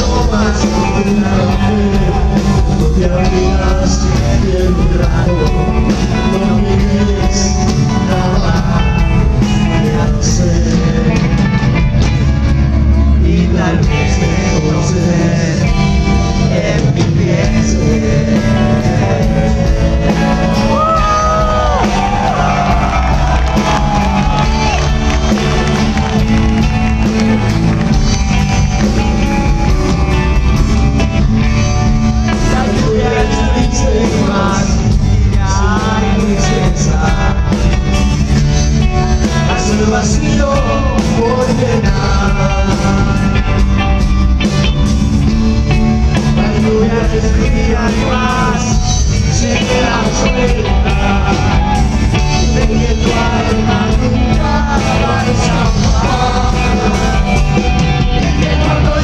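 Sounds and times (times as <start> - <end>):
bending lead guitar line: 0.0 - 59.0
live rock band playing: 0.0 - 59.0.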